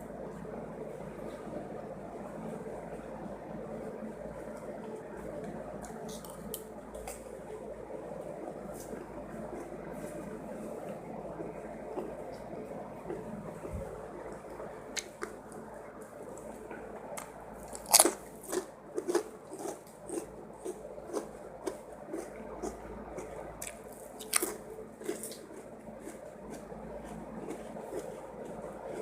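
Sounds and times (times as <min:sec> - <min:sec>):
person chewing crunchy food: 0:17.2 - 0:29.0.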